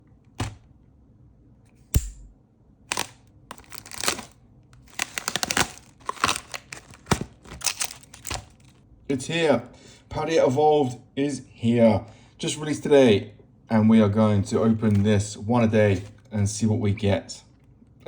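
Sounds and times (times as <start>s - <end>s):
foil wrapper crinkling: 2.9s - 8.8s.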